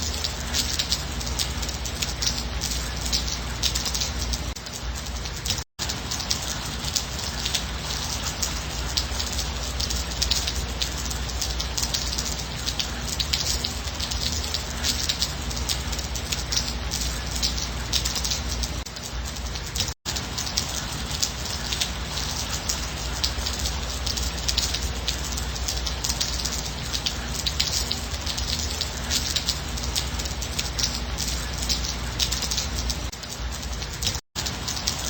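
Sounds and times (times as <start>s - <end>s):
gentle rain pattering: 0.0s - 35.0s.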